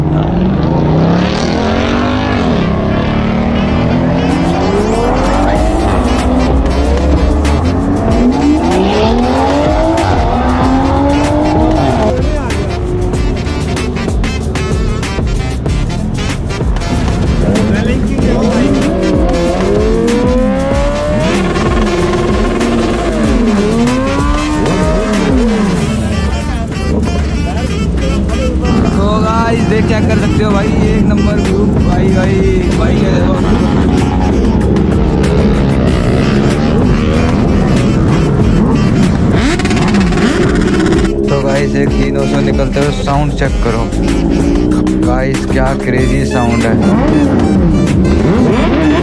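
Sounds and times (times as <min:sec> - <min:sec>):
vehicle engine revving: 0:00.0 - 0:49.0.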